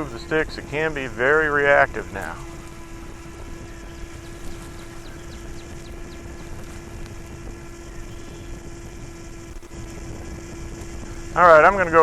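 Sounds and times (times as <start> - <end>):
rc airplane motor buzzing: 0.0 - 12.0
wind noise on microphone: 0.0 - 12.0.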